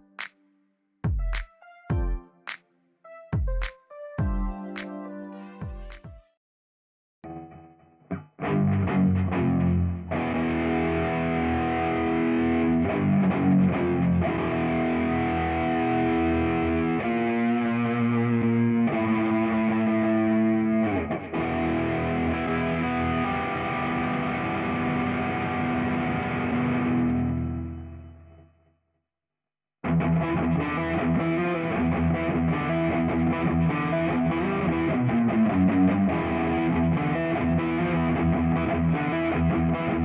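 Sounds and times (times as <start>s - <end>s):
distorted electric guitar chords: 7.2s - 28.4s, 29.8s - 40.0s.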